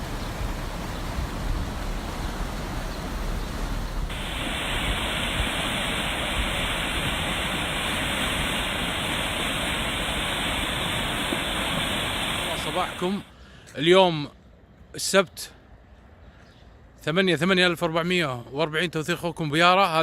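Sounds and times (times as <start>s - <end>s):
low wind rumble on microphone: 0.0s - 13.2s
floodwater rushing: 0.0s - 13.3s.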